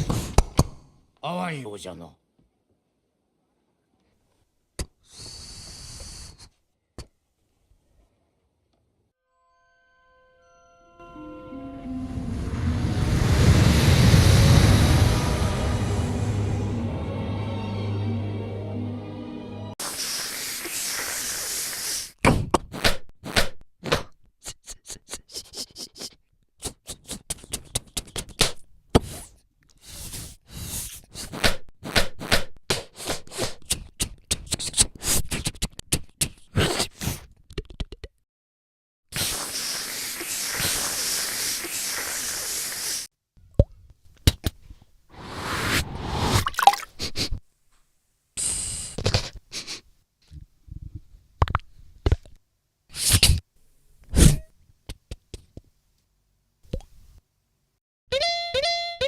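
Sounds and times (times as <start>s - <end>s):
mouth hiss: 5.1s - 6.5s, 19.8s - 22.2s, 39.1s - 43.1s, 48.4s - 49.8s
mouth clicks pops and hums: 26.6s - 29.1s, 37.4s - 38.2s, 43.5s - 44.6s, 51.4s - 52.4s, 56.6s - 57.0s
mouth clicks and pops: 26.6s - 29.2s, 31.2s - 38.2s.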